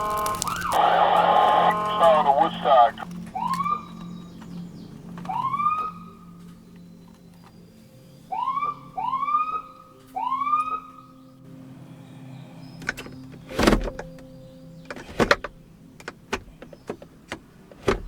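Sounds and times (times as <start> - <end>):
emergency siren whoops: 0.0 - 4.1, 5.3 - 6.4, 8.3 - 11.3
faint low hum: 0.0 - 16.9.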